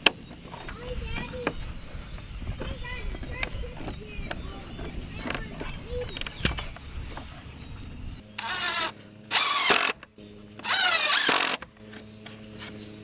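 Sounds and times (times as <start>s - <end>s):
power drill running: 8.4s - 12.0s.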